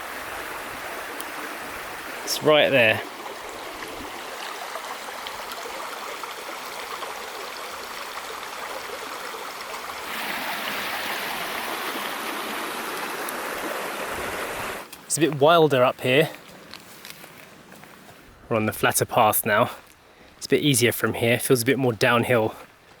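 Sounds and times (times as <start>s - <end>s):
stream water rushing: 0.0s - 16.8s.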